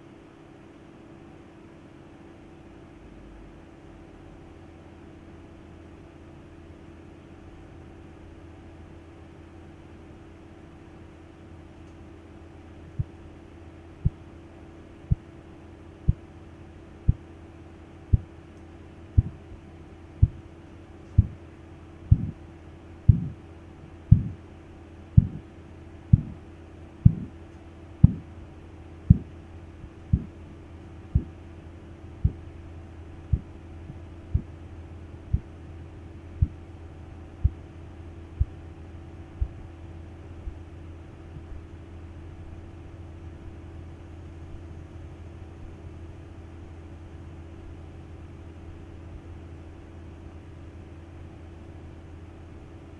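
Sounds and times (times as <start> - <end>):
steady low hum: 2.4 - 52.9
pulse beats through stethoscope: 14.0 - 14.3, 19.2 - 19.4, 20.2 - 20.4, 21.2 - 21.4, 22.1 - 22.4, 23.1 - 23.4, 24.1 - 24.4, 25.2 - 25.5, 26.1 - 26.4, 27.0 - 27.4, 28.0 - 28.3, 29.1 - 30.4, 31.1 - 31.4, 32.2 - 32.5, 34.3 - 34.6, 35.3 - 35.5, 36.4 - 36.6.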